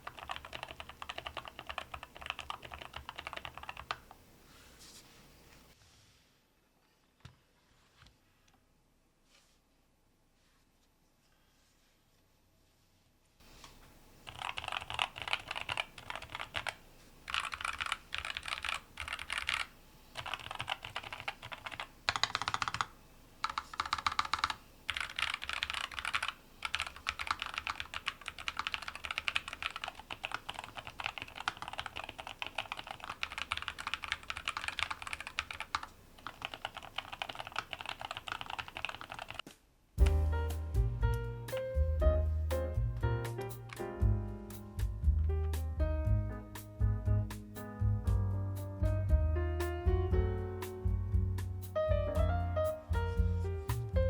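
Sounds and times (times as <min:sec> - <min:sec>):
mechanical keyboard typing: 0:00.0 - 0:04.2, 0:14.3 - 0:39.4.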